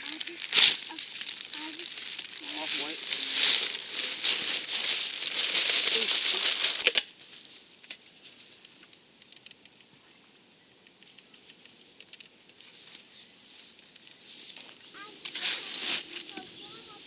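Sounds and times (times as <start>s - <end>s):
bag crinkling: 0.0s - 7.1s, 14.5s - 17.0s
faint ticks: 7.8s - 10.1s.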